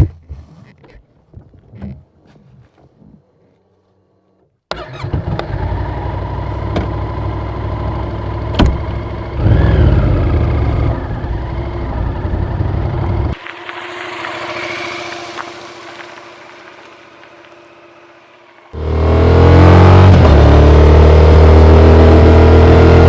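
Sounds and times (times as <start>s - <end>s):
motorcycle engine idling: 5.4s - 13.4s.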